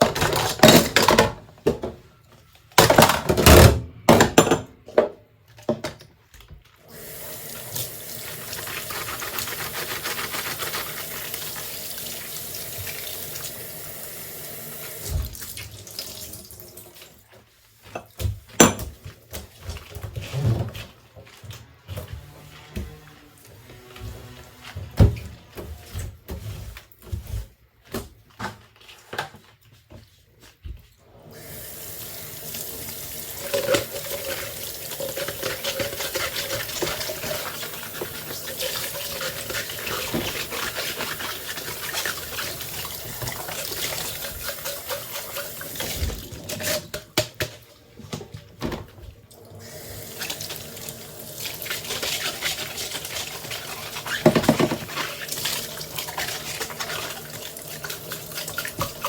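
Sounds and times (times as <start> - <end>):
dishes clinking and knocking: 2.8 - 6.0
kitchen tap running into sink: 6.8 - 17.3, 31.1 - 59.0.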